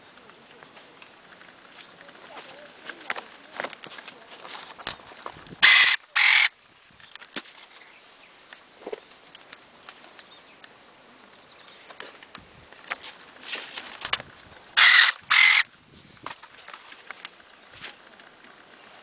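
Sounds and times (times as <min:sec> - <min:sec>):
stems clicking and rustling: 0:00.0 - 0:10.8, 0:11.6 - 0:19.0
electric pruning shears buzzing: 0:14.8 - 0:15.6.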